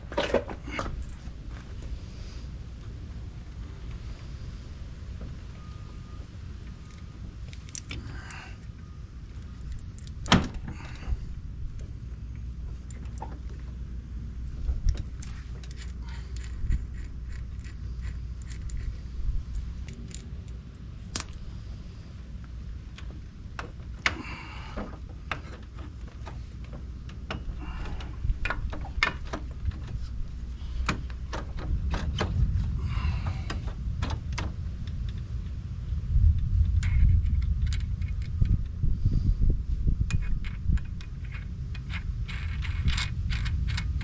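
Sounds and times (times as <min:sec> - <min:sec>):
metal tools clinking: 0:00.0 - 0:02.4, 0:05.6 - 0:08.7, 0:09.4 - 0:11.0, 0:14.9 - 0:21.7, 0:36.8 - 0:38.6, 0:40.1 - 0:44.0
low rumble: 0:00.0 - 0:23.6, 0:27.6 - 0:44.0.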